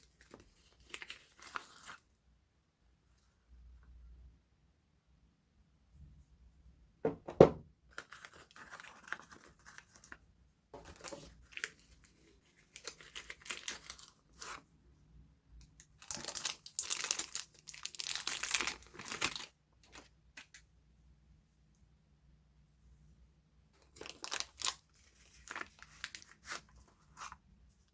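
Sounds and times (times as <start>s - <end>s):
packaging torn and crinkled: 0.1s - 2.0s, 8.0s - 10.2s, 10.8s - 14.6s, 15.8s - 20.6s, 23.8s - 27.4s
knock: 7.0s - 7.6s.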